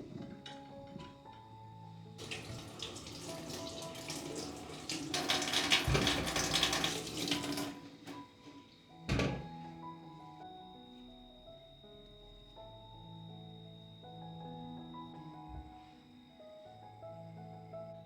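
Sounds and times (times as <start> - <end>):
soft background music: 0.0 - 18.0
tap water running into sink: 2.2 - 8.2.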